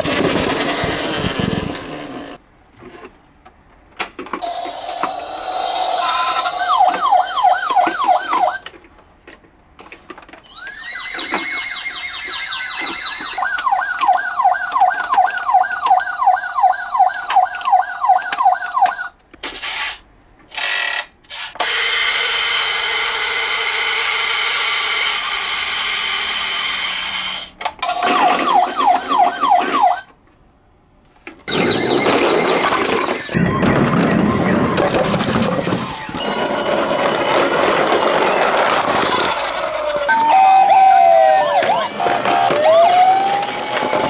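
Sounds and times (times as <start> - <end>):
siren wail: 4.4 - 8.7, 10.5 - 19.2, 27.9 - 30.1, 31.5 - 44.0
siren yelp: 4.4 - 8.7, 10.5 - 19.2, 28.0 - 30.1, 39.4 - 44.0.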